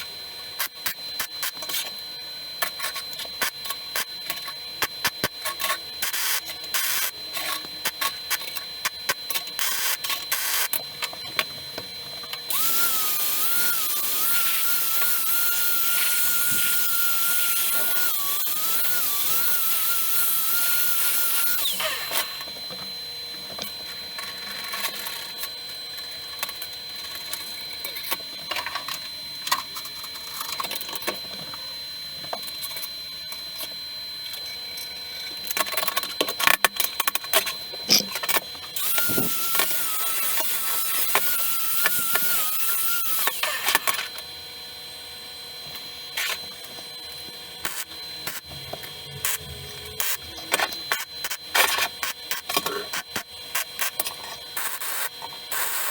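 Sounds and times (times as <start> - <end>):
small power tool whining: 0.0 - 55.9
clicks and knocks of tools: 23.5 - 31.6, 32.2 - 39.8.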